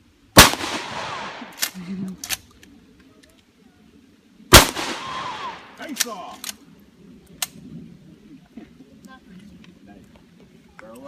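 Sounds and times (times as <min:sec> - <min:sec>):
shotgun blast echoing: 0:00.4 - 0:01.8, 0:04.5 - 0:06.1.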